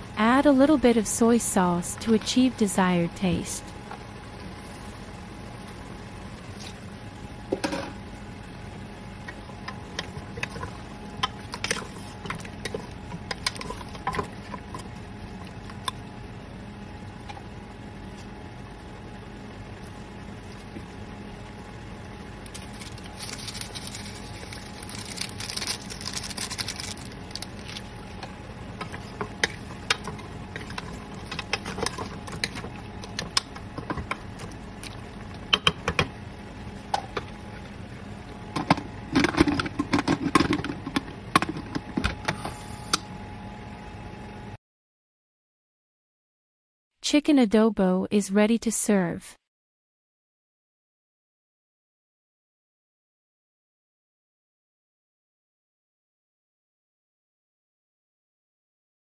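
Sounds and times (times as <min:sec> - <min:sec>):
steady low hum: 0:00.0 - 0:44.6.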